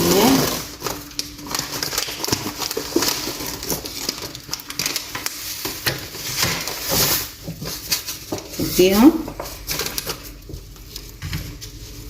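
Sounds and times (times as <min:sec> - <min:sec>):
dough rustling and crackling: 0:00.0 - 0:12.0.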